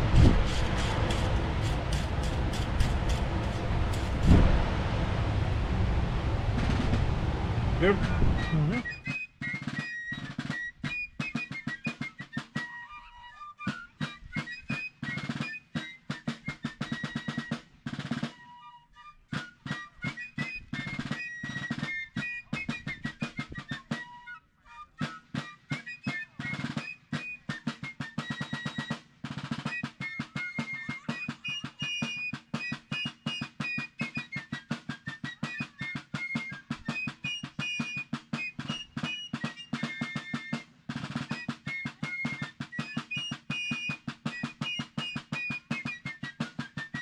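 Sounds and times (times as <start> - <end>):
music with fast drum beat: 7.8 - 12.8, 13.7 - 18.4, 19.6 - 24.0, 25.0 - 47.0.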